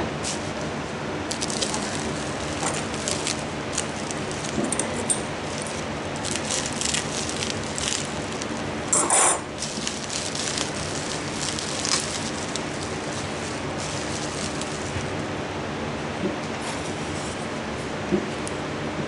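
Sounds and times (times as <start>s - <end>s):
steady low hum: 0.0s - 19.0s
packaging clattering: 1.3s - 15.2s.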